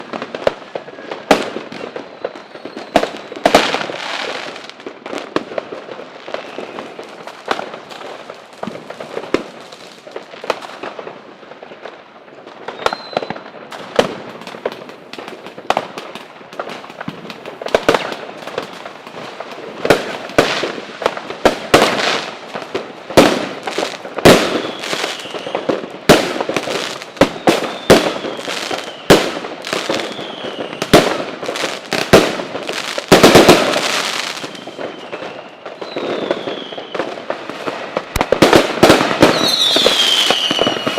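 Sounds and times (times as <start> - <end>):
fireworks bangs: 0.0 - 40.9
fireworks crackling: 0.0 - 40.9
faint whistling tones: 0.9 - 3.4, 6.4 - 7.0, 12.7 - 13.5, 24.6 - 25.6, 34.4 - 37.0.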